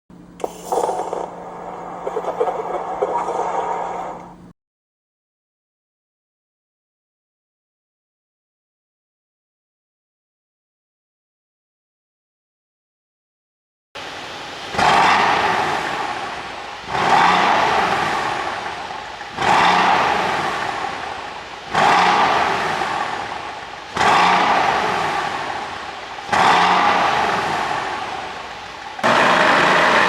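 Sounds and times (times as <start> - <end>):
car engine revving: 0.4 - 4.5, 14.0 - 30.0.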